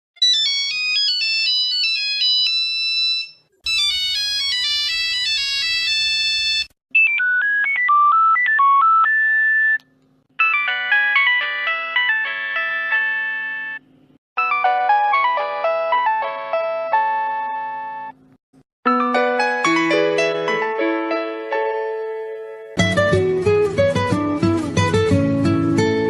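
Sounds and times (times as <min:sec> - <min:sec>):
phone ringtone melodies: 0:00.2 - 0:09.8, 0:10.4 - 0:13.8, 0:14.4 - 0:18.2, 0:18.9 - 0:21.4.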